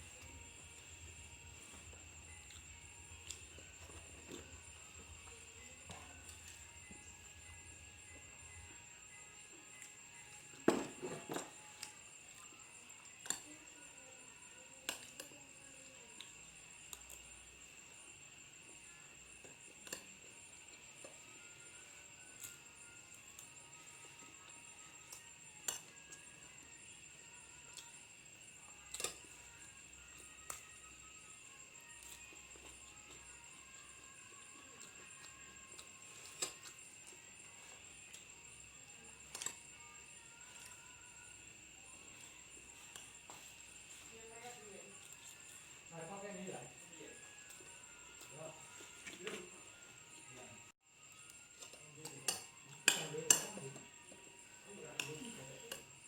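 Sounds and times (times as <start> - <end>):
night insects chirring: 0.0 - 56.0.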